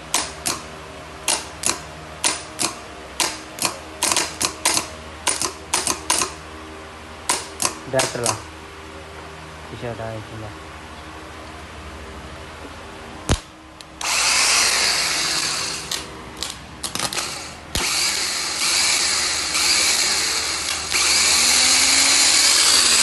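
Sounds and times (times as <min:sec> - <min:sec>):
car starter motor grinding whir: 0:14.0 - 0:23.0.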